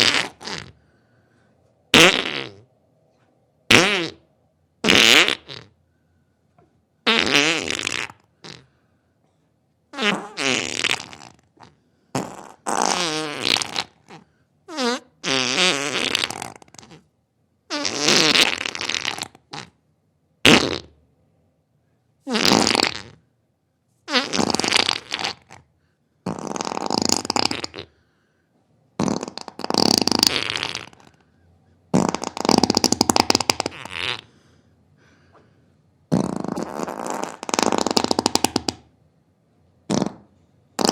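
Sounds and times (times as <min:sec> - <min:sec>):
wet flatulence blasts: 0:00.0 - 0:00.8, 0:01.9 - 0:02.7, 0:03.7 - 0:05.8, 0:07.0 - 0:08.7, 0:09.9 - 0:17.1, 0:17.7 - 0:19.8, 0:20.4 - 0:21.0, 0:22.3 - 0:23.2, 0:24.1 - 0:27.9, 0:29.0 - 0:31.2, 0:31.9 - 0:34.3, 0:36.1 - 0:38.9, 0:39.8 - 0:40.9.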